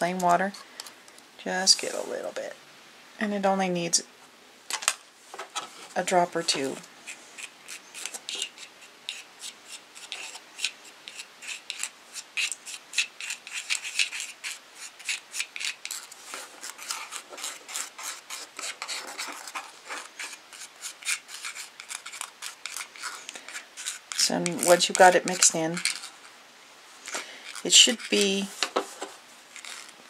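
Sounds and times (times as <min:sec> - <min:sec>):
utensil scraping paste in tray: 0:05.7 - 0:26.3, 0:27.1 - 0:30.0.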